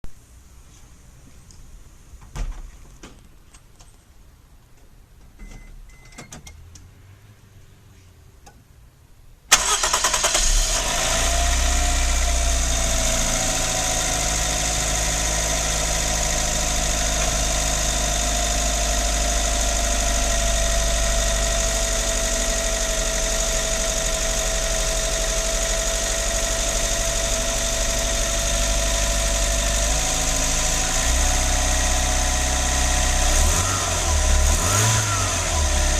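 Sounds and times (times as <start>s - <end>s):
car engine starting and idling: 9.5s - 35.9s.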